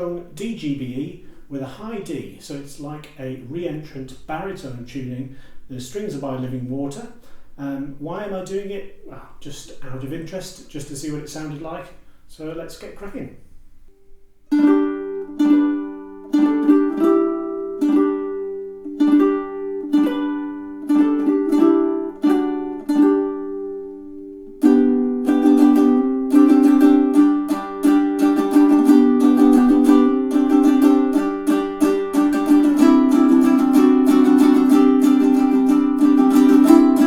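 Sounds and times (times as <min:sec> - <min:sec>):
ukulele chords strummed: 0:13.9 - 0:37.0.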